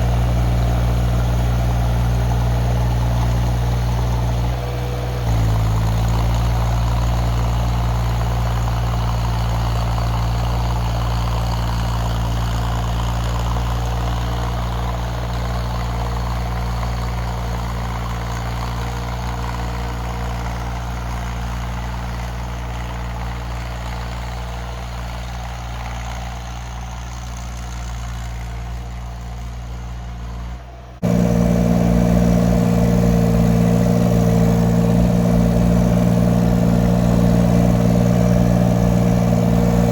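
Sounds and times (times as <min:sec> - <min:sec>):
excavator engine running: 0:30.2 - 0:39.9.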